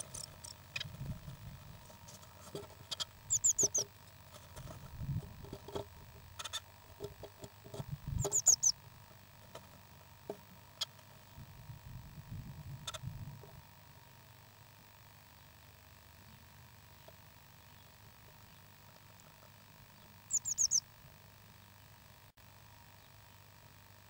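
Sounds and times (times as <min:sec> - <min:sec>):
baby birds peeping: 0:00.0 - 0:01.3, 0:01.9 - 0:04.8, 0:08.1 - 0:08.8, 0:19.9 - 0:20.9.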